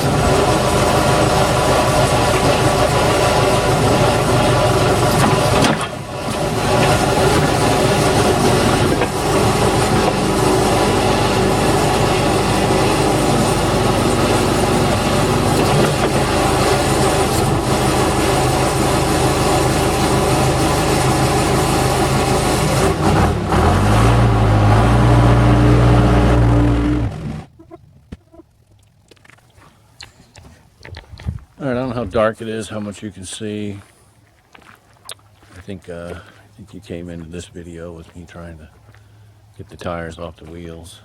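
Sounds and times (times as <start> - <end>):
backhoe engine running: 0.0 - 29.4.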